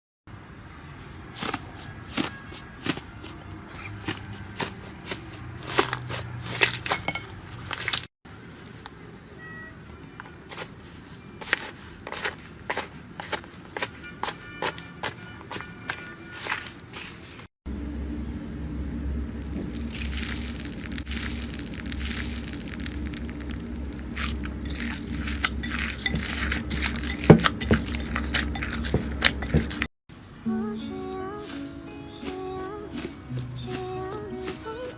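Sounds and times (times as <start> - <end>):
faint low hum: 17.7 - 29.7.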